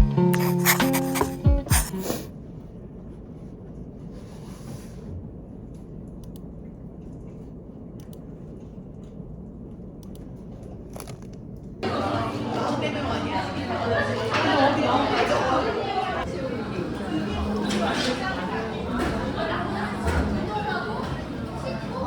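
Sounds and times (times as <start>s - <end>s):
guitar music: 0.0s - 2.0s
low background hum: 0.0s - 22.0s
faint clicks: 5.7s - 7.4s, 9.0s - 11.7s.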